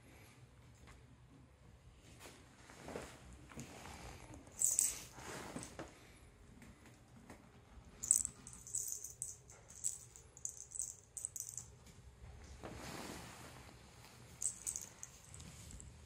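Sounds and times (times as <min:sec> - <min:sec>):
light jingling rattles: 0:04.5 - 0:05.2, 0:08.0 - 0:11.7, 0:14.4 - 0:15.8.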